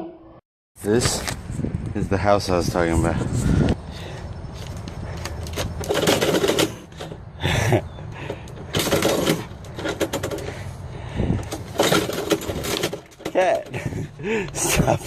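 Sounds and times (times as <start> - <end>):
mail slot flap rattling: 5.4 - 7.1, 8.7 - 10.5, 11.4 - 13.8.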